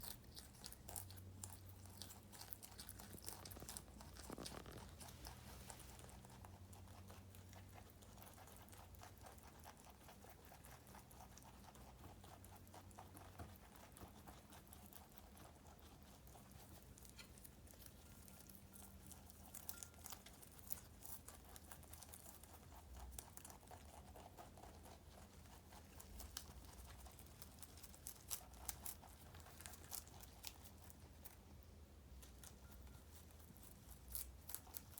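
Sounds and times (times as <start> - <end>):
rabbits crunching lettuce: 0.0 - 34.9.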